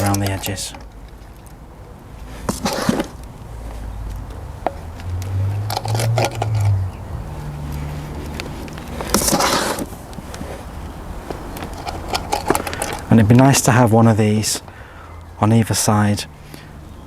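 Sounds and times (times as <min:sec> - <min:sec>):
low hum: 0:03.2 - 0:09.0
compost scraping and pouring: 0:07.8 - 0:10.7.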